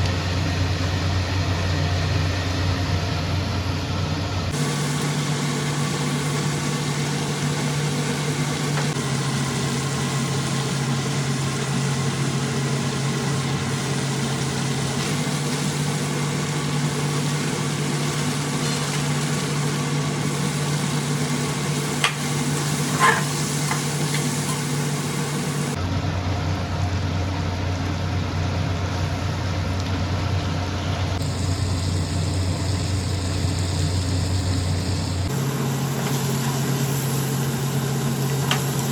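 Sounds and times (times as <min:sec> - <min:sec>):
low mechanical hum: 0:00.0 - 0:38.9
food sizzling in a pan: 0:04.6 - 0:25.8, 0:31.2 - 0:38.9.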